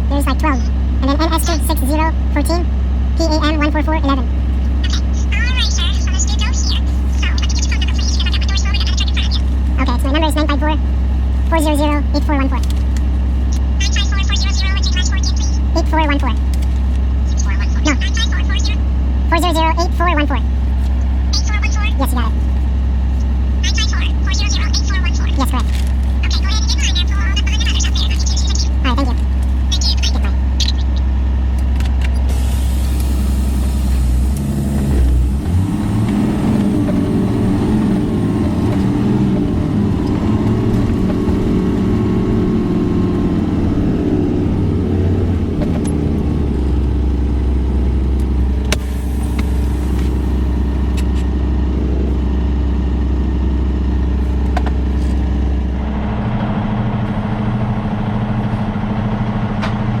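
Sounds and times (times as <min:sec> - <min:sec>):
road noise: 0:00.0 - 1:00.0
truck diesel engine drone: 0:00.0 - 1:00.0.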